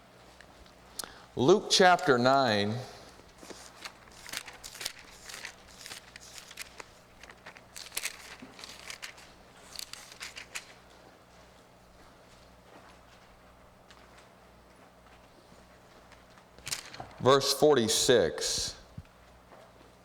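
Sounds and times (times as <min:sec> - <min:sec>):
faint electrical hum: 0:00.0 - 0:20.0
thin paper pages rustling: 0:03.2 - 0:10.9, 0:16.6 - 0:17.2.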